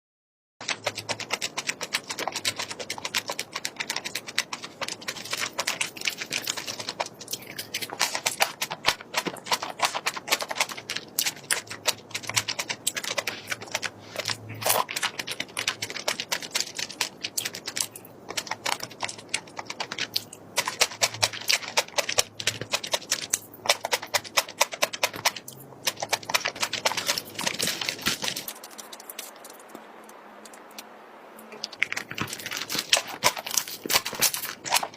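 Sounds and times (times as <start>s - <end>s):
crunchy food being chewed: 0.8s - 29.8s, 31.5s - 34.9s.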